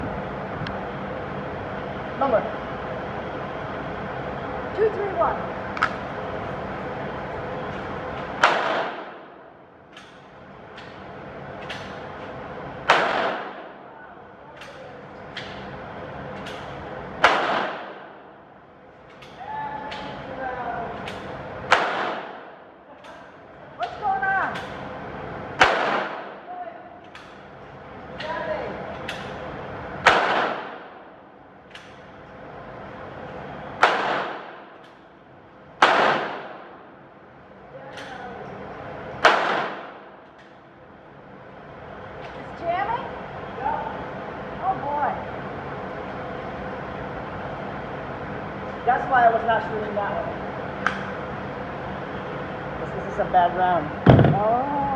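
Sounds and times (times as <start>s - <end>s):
loud gunshots echoing: 8.3s - 9.4s, 12.8s - 13.8s, 17.2s - 18.2s, 21.7s - 22.6s, 25.6s - 26.4s, 30.0s - 31.1s, 33.8s - 34.7s, 35.8s - 36.8s, 39.2s - 40.1s.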